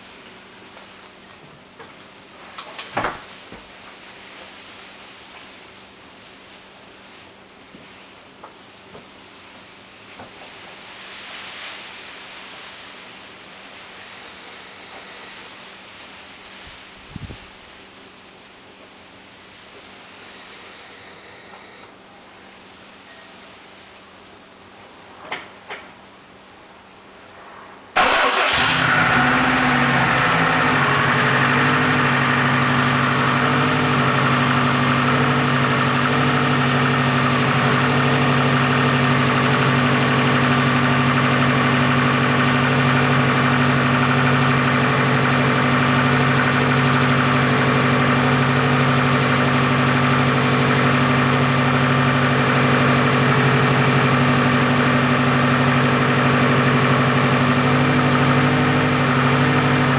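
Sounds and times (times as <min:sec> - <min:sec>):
car engine starting and idling: 0:27.9 - 0:59.9.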